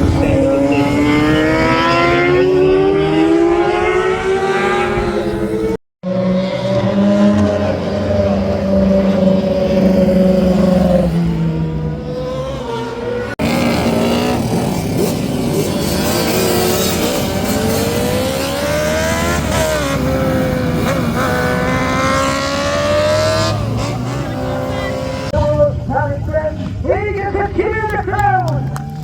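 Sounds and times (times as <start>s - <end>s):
racing car engines revving: 0.0s - 26.9s
cars passing: 0.0s - 29.0s.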